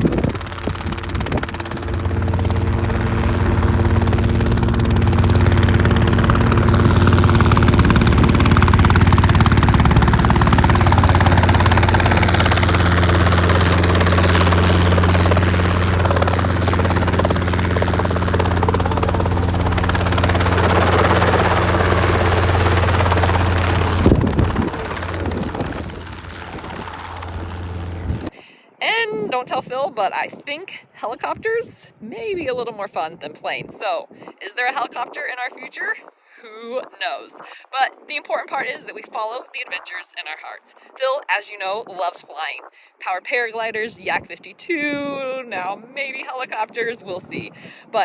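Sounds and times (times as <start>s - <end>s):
helicopter engine and rotor drone: 0.0s - 28.4s.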